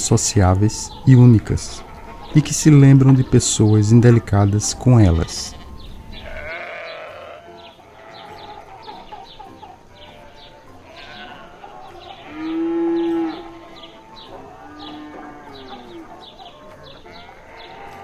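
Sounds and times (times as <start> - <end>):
high chirps: 0.0 - 6.5
cow mooing: 0.0 - 8.4, 10.9 - 16.2.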